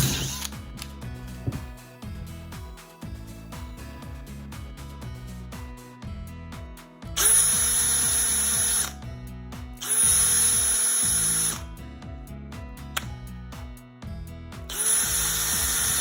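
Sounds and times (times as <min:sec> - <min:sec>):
cordless drill motor whine: 0:07.2 - 0:08.9, 0:09.8 - 0:11.6, 0:14.7 - 0:16.0.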